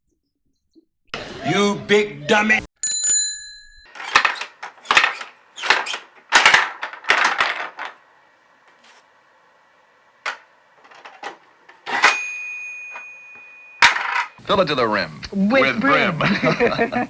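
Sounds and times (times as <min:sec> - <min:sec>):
bell ringing: 0:02.8 - 0:04.0, 0:12.0 - 0:14.4.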